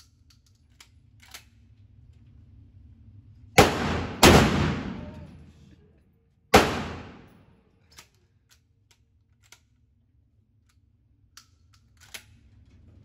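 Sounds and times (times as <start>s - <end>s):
gunshot: 3.6s - 5.4s, 6.6s - 7.4s.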